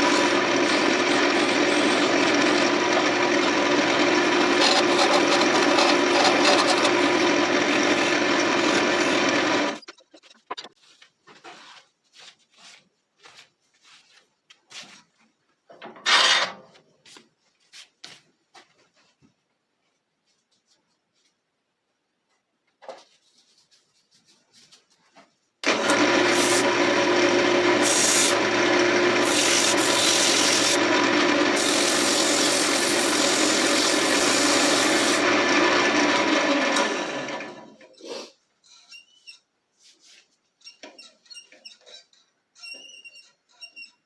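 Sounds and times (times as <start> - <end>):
wood lathe cutting: 0.0 - 9.8, 25.6 - 37.7.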